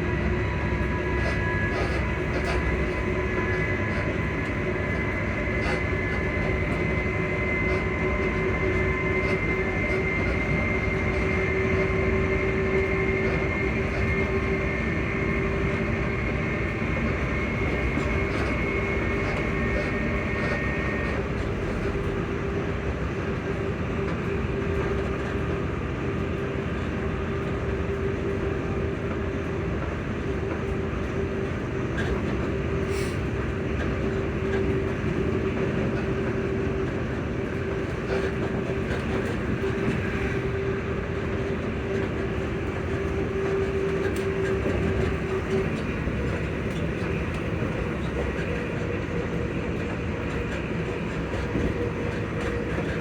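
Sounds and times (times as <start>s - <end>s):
train wheels clattering on track: 0.0s - 53.0s
traction motor whine: 31.2s - 53.0s.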